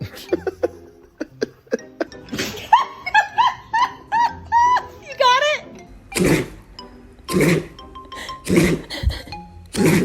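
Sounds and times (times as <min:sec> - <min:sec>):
high-pitched laughter: 0:00.0 - 0:05.0.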